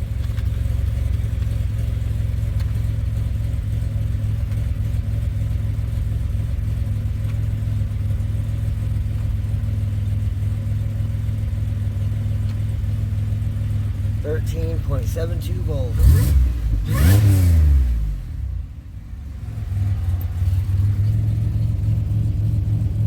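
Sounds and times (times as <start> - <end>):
car engine idling: 0.0 - 23.0.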